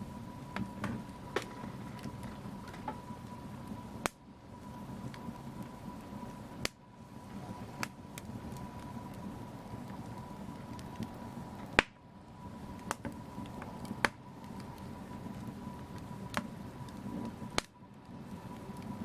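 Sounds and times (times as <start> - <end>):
fire hiss and rumble: 0.0 - 19.0
wood fire crackling: 0.0 - 19.0
sharp fire pops: 0.5 - 3.0, 4.0 - 4.2, 6.6 - 6.8, 7.7 - 9.2, 10.6 - 12.0, 12.7 - 14.8, 15.9 - 17.8.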